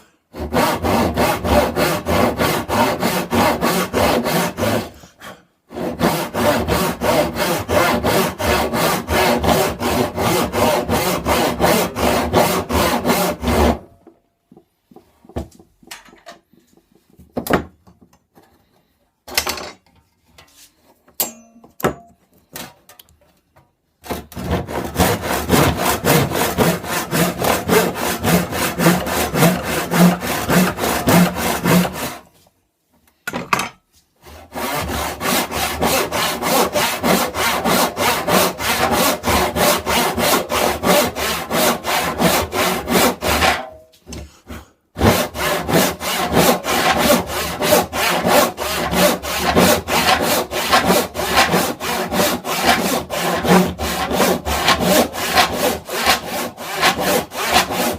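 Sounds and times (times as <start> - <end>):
hand saw cutting wood: 0.3 - 13.9, 24.0 - 32.3, 34.2 - 57.9.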